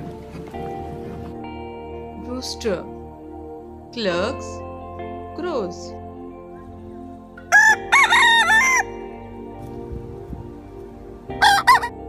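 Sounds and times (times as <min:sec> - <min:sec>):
rooster crowing: 0:07.5 - 0:08.9, 0:11.4 - 0:11.9.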